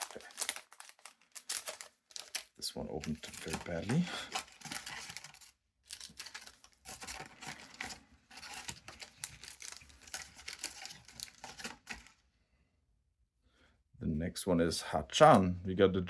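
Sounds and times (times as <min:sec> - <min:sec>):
foil wrapper crinkling and tearing: 0:00.0 - 0:12.2.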